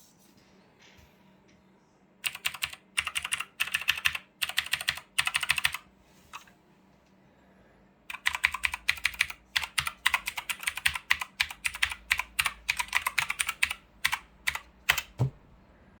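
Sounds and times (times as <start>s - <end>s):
mechanical keyboard typing: 2.2s - 5.9s, 8.1s - 15.4s.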